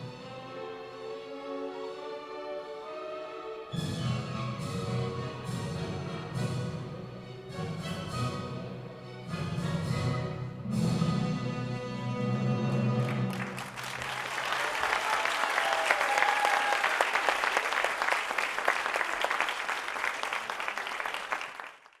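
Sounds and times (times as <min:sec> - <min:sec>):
orchestral music: 0:00.0 - 0:13.8
audience applauding: 0:12.7 - 0:22.0.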